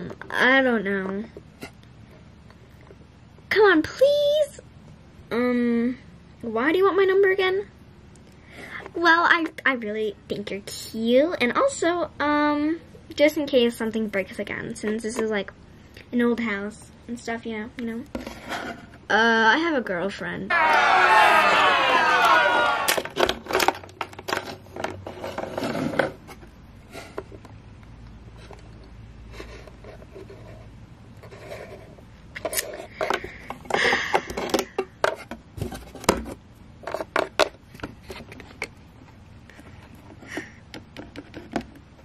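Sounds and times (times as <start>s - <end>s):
plastic toys clicking and scraping: 22.9s - 26.4s, 28.4s - 38.7s.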